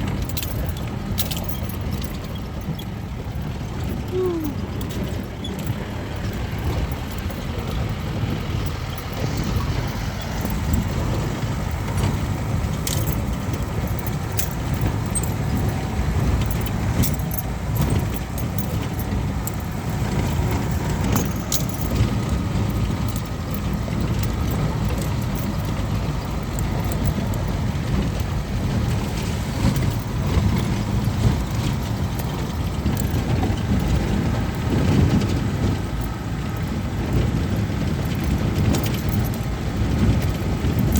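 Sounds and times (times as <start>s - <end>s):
rattles and clinks: 0.0s - 40.9s
vehicle rumble on rough road: 0.0s - 40.9s.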